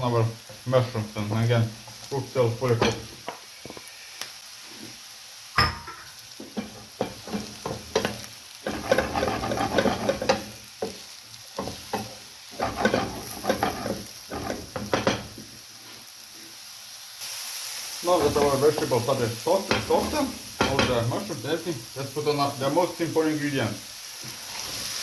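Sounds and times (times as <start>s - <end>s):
vegetables sizzling in frying pan: 0.0s - 25.0s
sharp knock on pan: 5.6s - 6.1s
utensil scraping and tapping pan: 5.6s - 11.0s, 11.6s - 15.4s.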